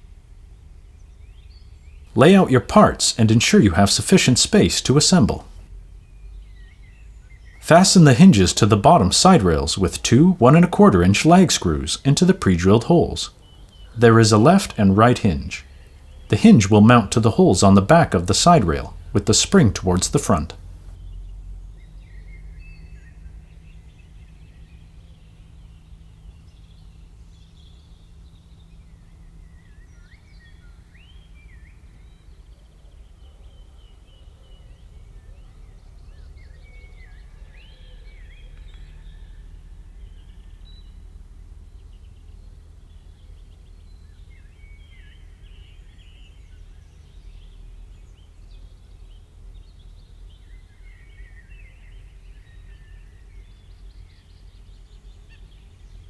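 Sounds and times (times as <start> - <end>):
birds chirping: 2.1 - 5.6, 7.6 - 20.9.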